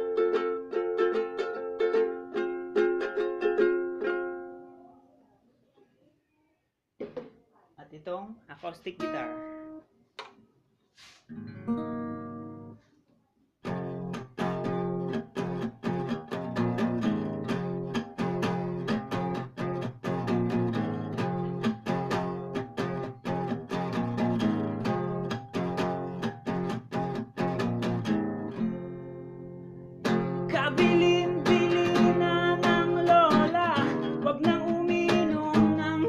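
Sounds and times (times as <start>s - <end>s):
acoustic guitar strumming chords: 8.9s - 9.8s, 11.3s - 12.8s, 13.6s - 36.0s.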